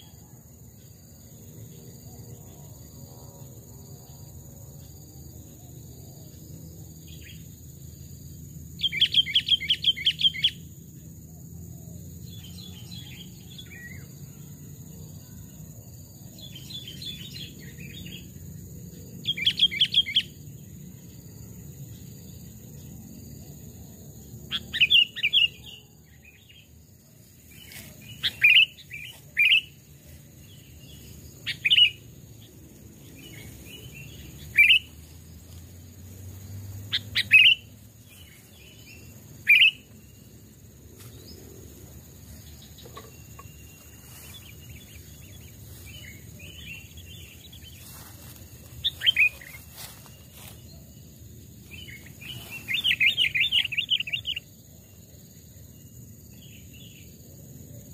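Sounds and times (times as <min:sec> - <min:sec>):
bird chirping: 0:04.0 - 0:57.9.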